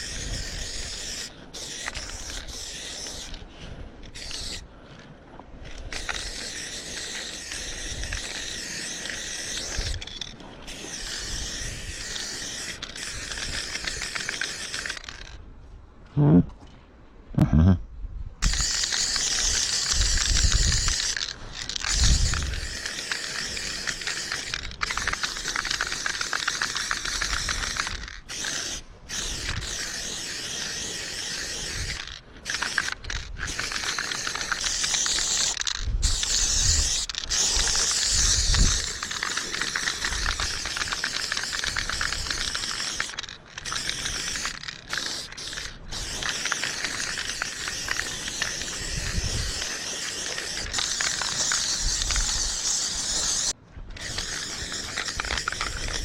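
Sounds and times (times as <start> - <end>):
spray can hissing: 0.0 - 3.4, 4.2 - 4.6, 5.9 - 15.4, 18.4 - 56.0.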